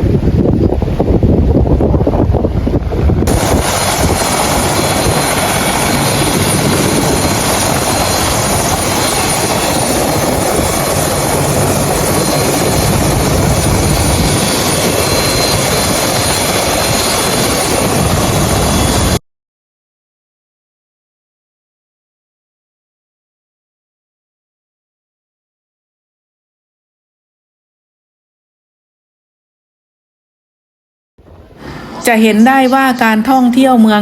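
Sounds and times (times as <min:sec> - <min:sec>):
helicopter rotor and turbine: 0:00.0 - 0:19.2
faint high whine: 0:03.2 - 0:19.2.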